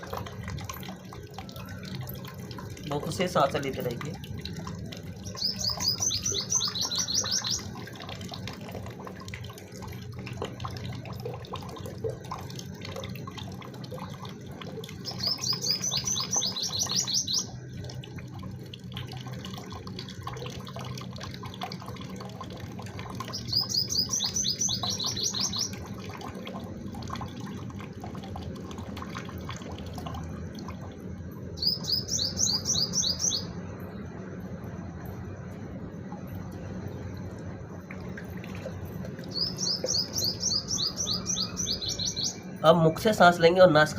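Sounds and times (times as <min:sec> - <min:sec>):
bird trilling: 0:05.2 - 0:07.8, 0:15.0 - 0:17.6, 0:23.3 - 0:25.8, 0:31.6 - 0:33.6, 0:39.3 - 0:42.6.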